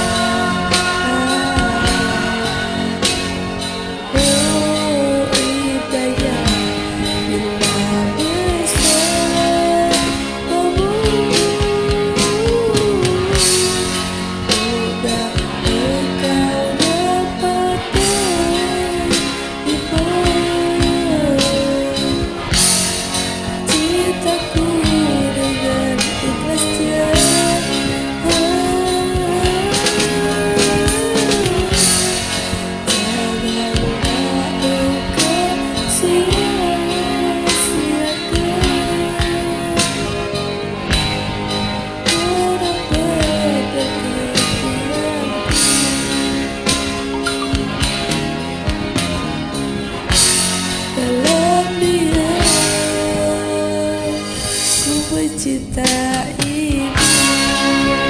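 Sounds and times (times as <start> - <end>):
person singing: 0.0 - 22.7, 23.7 - 41.0, 42.0 - 47.5, 51.0 - 58.0
karaoke backing track: 0.0 - 58.0.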